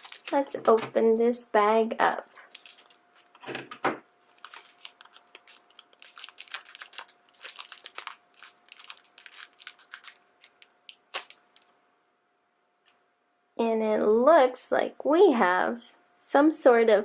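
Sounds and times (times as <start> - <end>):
plastic bag crinkling: 0.0 - 0.9, 2.4 - 3.5, 4.2 - 11.7.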